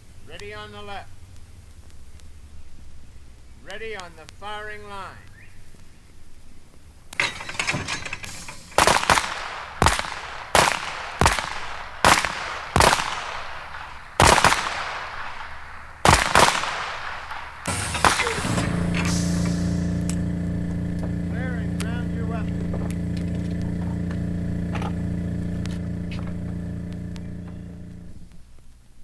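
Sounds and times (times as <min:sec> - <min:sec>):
pistol shots with echo: 0:08.2 - 0:19.5
low hum: 0:17.7 - 0:28.6.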